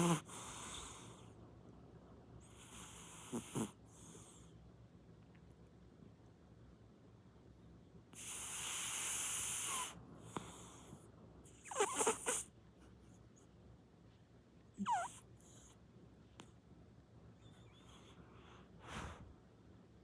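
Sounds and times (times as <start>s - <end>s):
cat snoring: 0.0s - 1.2s, 2.5s - 4.3s, 8.2s - 10.7s, 11.6s - 12.4s, 14.8s - 15.2s.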